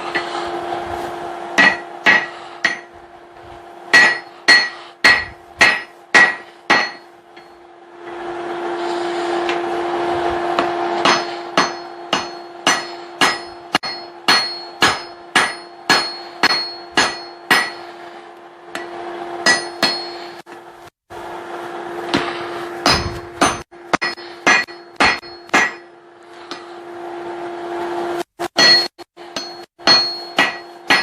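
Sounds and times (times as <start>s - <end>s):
hammer striking steel on anvil: 0.0s - 0.4s, 1.5s - 3.0s, 3.9s - 8.2s, 10.5s - 18.1s, 18.7s - 20.7s, 22.1s - 26.8s, 28.4s - 31.0s
steady hum: 0.0s - 31.0s.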